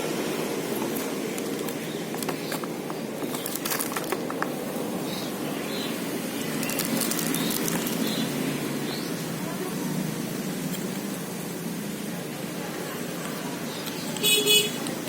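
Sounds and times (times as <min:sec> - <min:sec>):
steady background noise: 0:00.0 - 0:15.0
plastic packaging crinkling: 0:00.8 - 0:04.6, 0:06.5 - 0:08.3.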